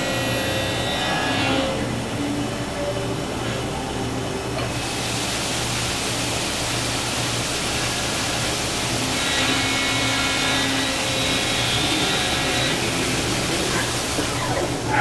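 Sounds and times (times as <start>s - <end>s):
milling machine cutting whine: 0.0s - 3.1s, 8.9s - 15.0s
constant machine hum: 0.0s - 15.0s.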